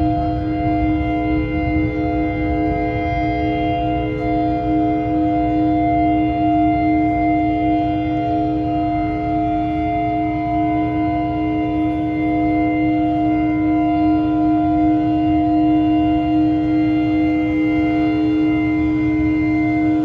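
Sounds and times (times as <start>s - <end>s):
low rumble: 0.0s - 10.8s
ships' horns blasting: 0.0s - 20.0s.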